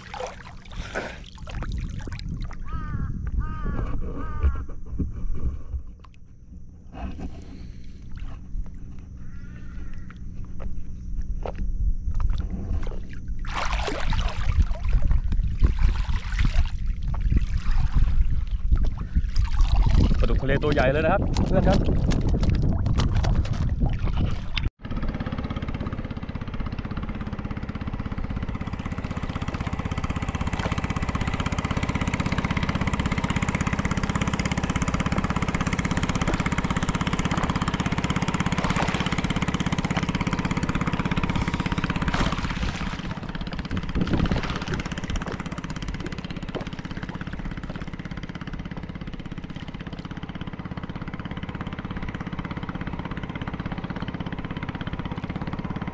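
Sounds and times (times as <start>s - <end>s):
boat engine running: 0.0s - 55.9s.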